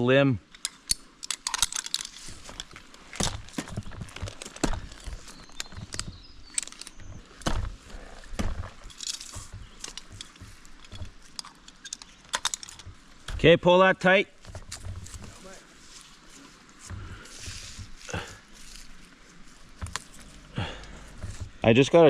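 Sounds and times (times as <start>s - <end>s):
metal climbing hardware clinking: 0.5s - 13.5s
knocks and scuffs on tree limb: 2.3s - 6.4s, 7.0s - 11.4s, 14.3s - 21.7s.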